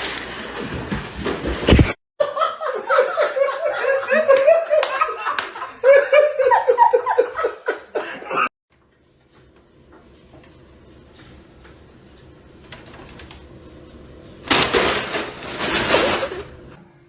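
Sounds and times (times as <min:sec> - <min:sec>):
person laughing hard: 0:02.2 - 0:08.5.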